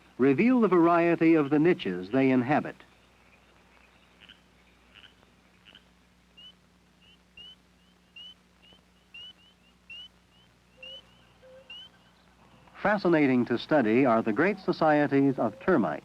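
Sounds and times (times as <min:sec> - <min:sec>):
whistle-like animal chirps: 0:09.2 - 0:12.0.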